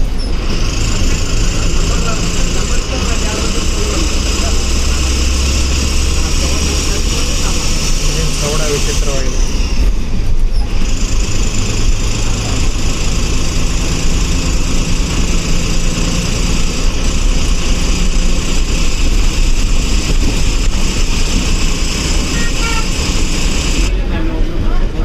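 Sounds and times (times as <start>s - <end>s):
bus diesel engine running: 0.0s - 25.0s.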